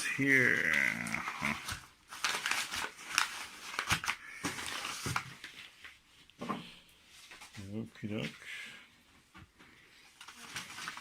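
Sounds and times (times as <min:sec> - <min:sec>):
packaging crinkling and rustling: 0:00.0 - 0:06.0, 0:10.1 - 0:11.0.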